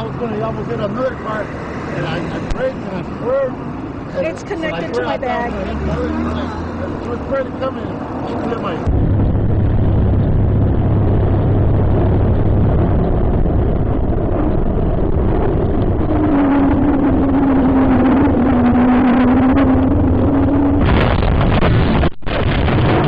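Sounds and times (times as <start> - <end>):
vehicle engine running: 0.0 - 21.4
loud wind rush: 0.0 - 23.0.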